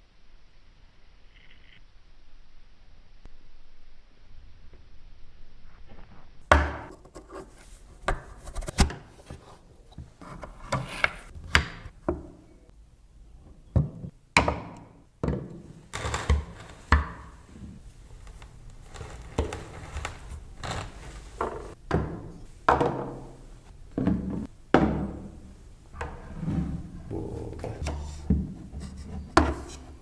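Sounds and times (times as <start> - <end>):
wood rubbing: 15.9 - 22.4.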